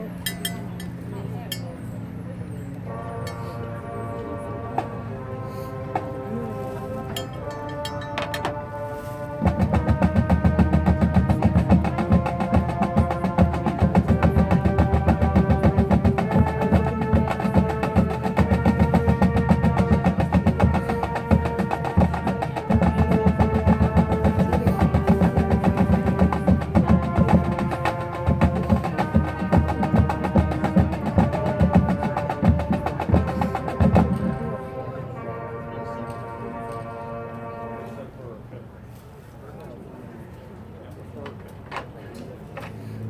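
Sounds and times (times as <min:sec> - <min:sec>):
held wind chords: 0:00.0 - 0:38.6
marching band playing: 0:02.8 - 0:38.2
rapid drum strokes: 0:07.1 - 0:34.6.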